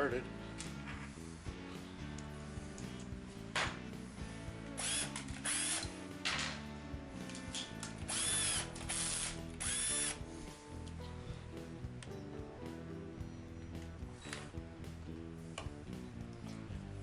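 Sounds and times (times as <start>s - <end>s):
power drill driving screws: 4.7s - 6.5s, 7.3s - 10.2s.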